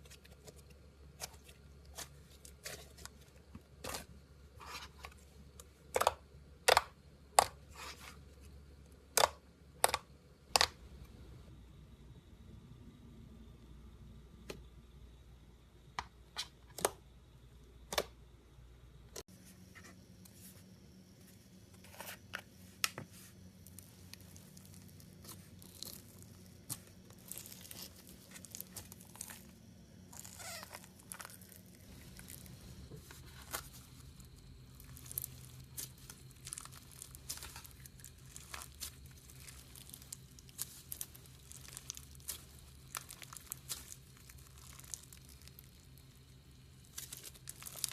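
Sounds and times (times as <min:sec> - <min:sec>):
slime crackles and clicks: 0:34.8 - 0:45.8.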